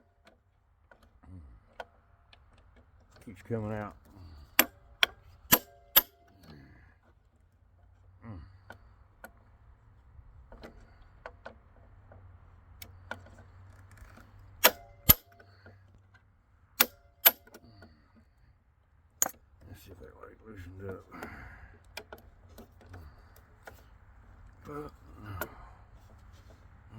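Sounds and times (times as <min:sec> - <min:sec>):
hammer striking metal: 0:05.5 - 0:06.2, 0:14.6 - 0:15.4, 0:16.8 - 0:17.5.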